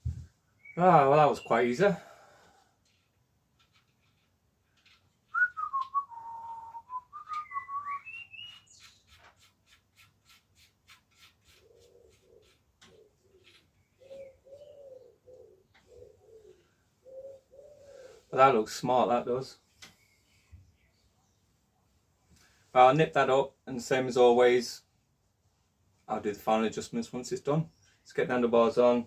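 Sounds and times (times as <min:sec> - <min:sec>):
man whistling: 0:05.3 - 0:08.4
pigeon cooing: 0:11.5 - 0:18.3.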